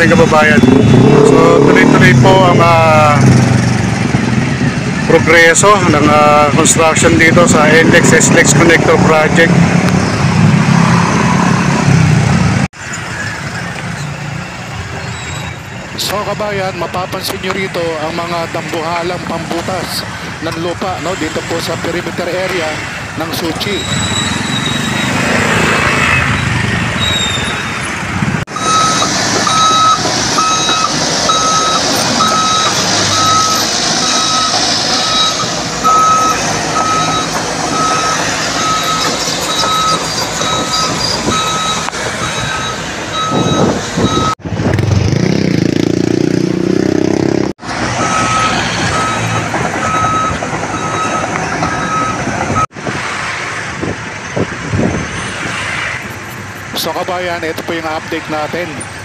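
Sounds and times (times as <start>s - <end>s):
engines and traffic rumble: 0.0s - 59.0s
backup alarm beeping: 28.5s - 44.4s, 48.0s - 52.7s.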